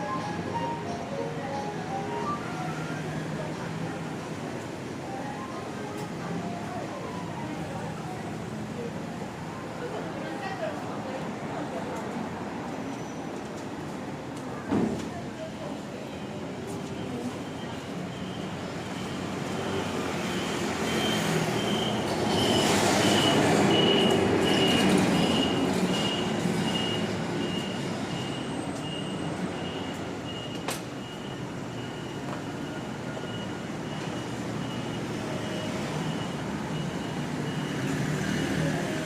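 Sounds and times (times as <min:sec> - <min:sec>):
street traffic: 0:00.0 - 0:39.0.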